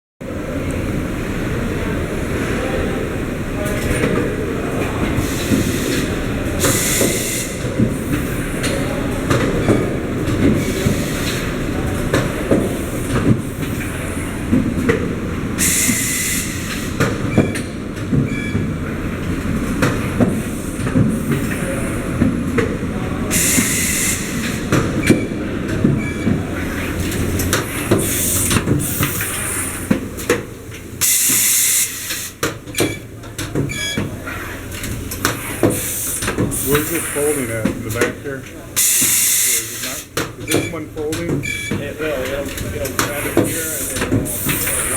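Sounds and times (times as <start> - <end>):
machine clattering and clicking: 24.4 - 44.9.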